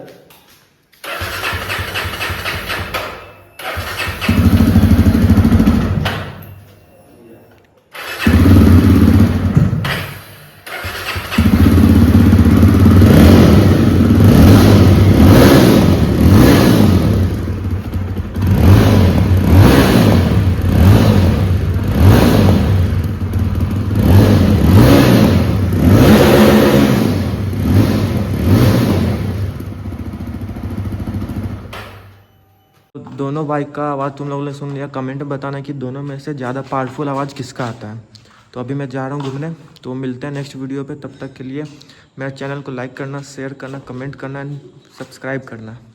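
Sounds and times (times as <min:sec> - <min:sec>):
motorcycle engine revving: 0:01.0 - 0:03.0, 0:03.6 - 0:06.2, 0:08.0 - 0:32.1.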